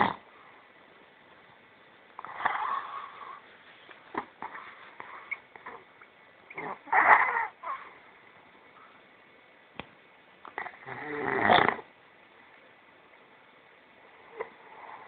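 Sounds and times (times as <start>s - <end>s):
person snoring: 10.7s - 11.8s.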